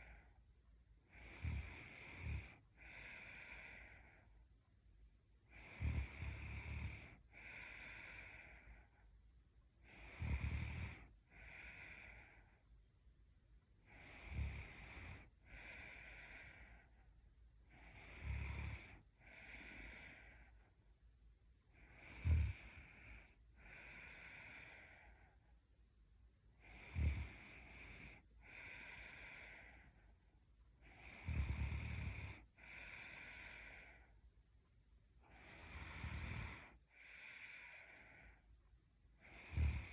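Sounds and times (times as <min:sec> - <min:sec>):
woman snoring: 0:01.1 - 0:04.2, 0:05.5 - 0:08.9, 0:09.8 - 0:12.6, 0:13.8 - 0:17.0, 0:17.7 - 0:20.6, 0:21.8 - 0:25.3, 0:26.6 - 0:30.0, 0:30.8 - 0:34.1, 0:35.2 - 0:38.4, 0:39.2 - 0:39.9.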